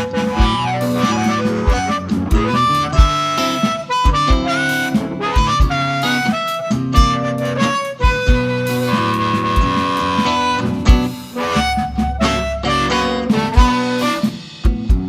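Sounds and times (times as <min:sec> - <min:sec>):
harmonica: 0:00.0 - 0:14.7
bass: 0:00.0 - 0:15.0
guitar: 0:00.0 - 0:15.0
kick drum: 0:10.8 - 0:14.0, 0:14.7 - 0:15.0.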